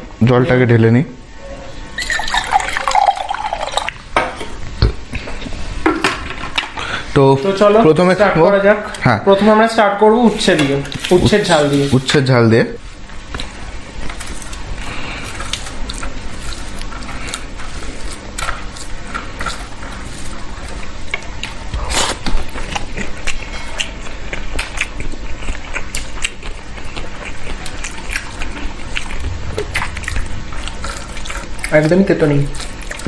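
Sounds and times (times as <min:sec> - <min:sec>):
chewing with mouth clicks: 0:13.4 - 0:33.0.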